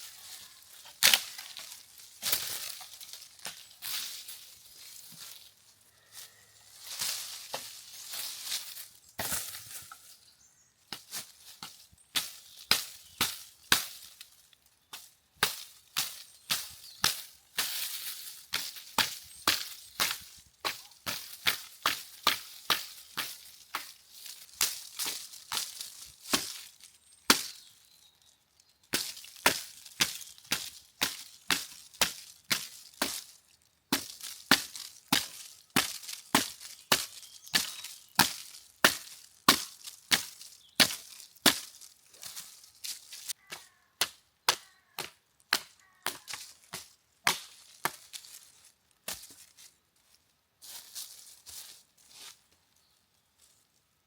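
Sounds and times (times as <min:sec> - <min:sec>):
sharp chopping strikes: 0:27.3 - 0:27.6, 0:34.0 - 0:41.7.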